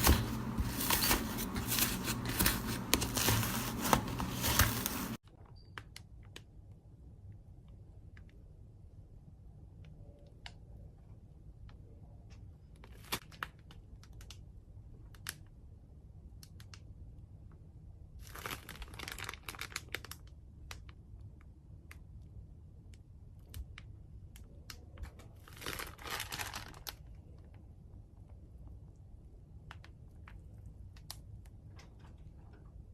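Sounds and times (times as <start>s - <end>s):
slime crackling: 0.0s - 5.2s.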